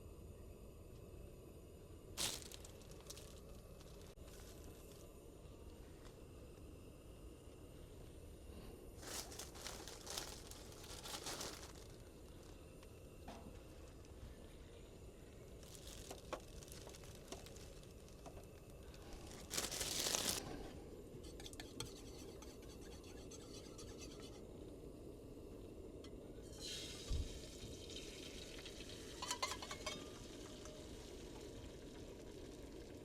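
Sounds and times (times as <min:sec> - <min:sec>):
low background noise: 0:00.0 - 0:33.0
cookware clinking and scraping: 0:21.2 - 0:24.4, 0:29.2 - 0:30.2.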